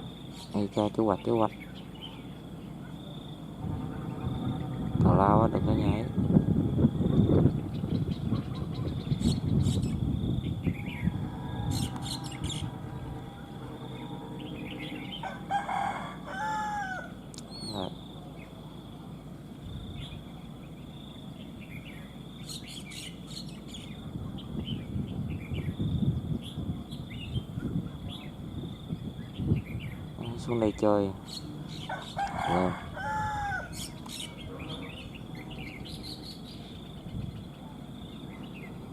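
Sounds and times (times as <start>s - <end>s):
birds chirping and calling: 0.0s - 18.6s, 19.6s - 38.9s
high-pitched drone: 2.2s - 18.1s, 31.2s - 37.9s
rooster crowing: 10.8s - 17.2s, 31.7s - 36.2s.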